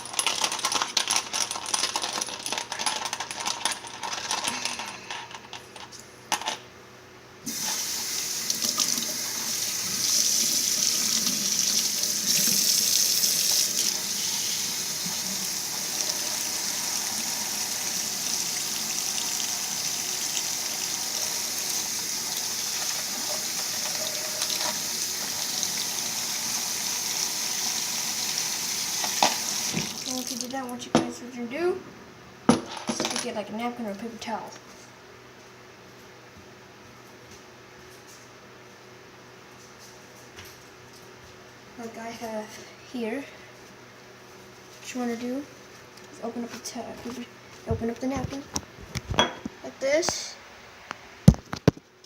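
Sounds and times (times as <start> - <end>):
tap water running into sink: 7.5 - 30.5
metal bearings clinking: 22.8 - 24.9.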